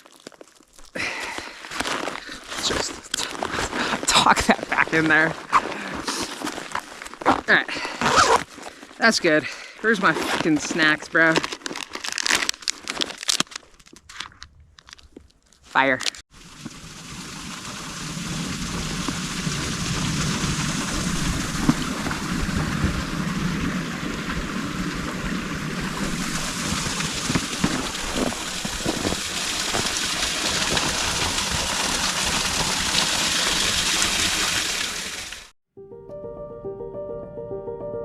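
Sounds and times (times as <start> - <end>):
running water rushing: 16.3 - 35.5.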